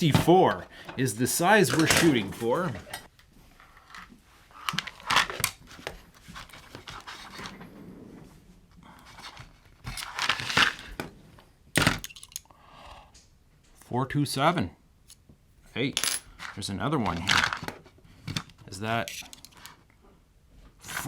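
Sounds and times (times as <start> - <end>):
metal drill bits rattling: 19.1 - 19.7.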